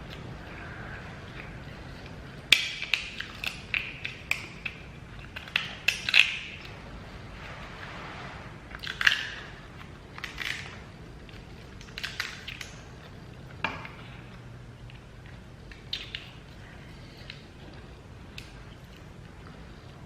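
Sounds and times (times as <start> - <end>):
crab shells cracking: 0.2 - 6.8, 10.2 - 14.4.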